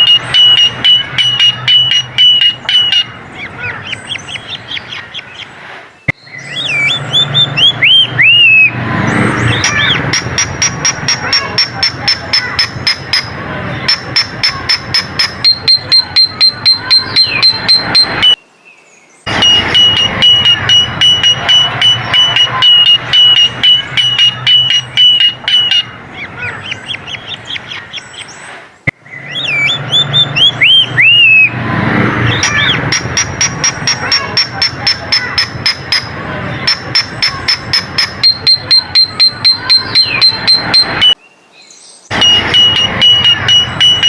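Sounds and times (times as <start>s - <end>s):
bird calling with sharp clicks: 0.0s - 3.1s, 36.7s - 41.2s
high whistled bird tone: 0.0s - 3.2s, 6.1s - 10.4s, 13.9s - 18.4s, 19.3s - 26.0s, 29.1s - 31.6s, 36.7s - 41.3s, 42.1s - 44.0s.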